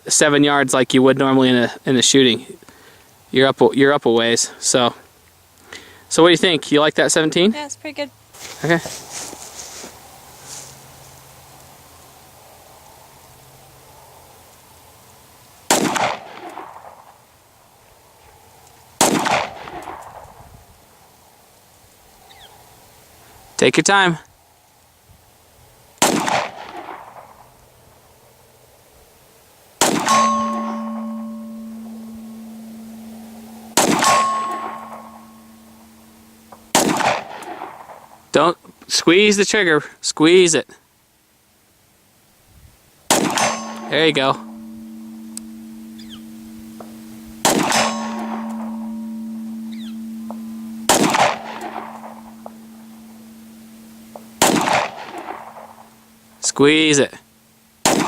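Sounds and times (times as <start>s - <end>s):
pistol shots: 15.7s - 16.8s, 19.0s - 20.0s, 26.0s - 27.1s, 29.8s - 30.2s, 33.8s - 35.0s, 36.7s - 38.0s, 43.1s - 43.9s, 54.4s - 55.6s
pistol shots with echo: 15.7s - 16.9s, 26.0s - 27.2s, 29.8s - 32.9s, 33.7s - 36.1s, 36.7s - 38.1s, 43.1s - 46.8s, 47.4s - 55.8s
steel gong target ringing: 29.8s - 38.2s, 43.1s - 58.0s.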